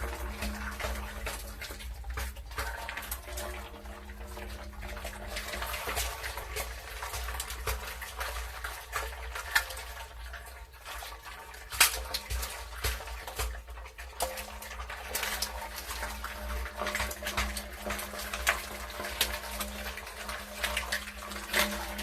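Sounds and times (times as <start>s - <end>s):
water splashing and trickling: 0.0s - 22.0s.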